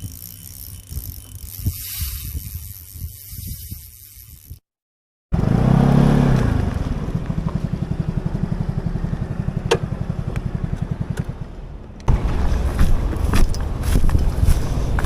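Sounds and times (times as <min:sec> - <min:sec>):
small engine running: 0:00.0 - 0:04.7.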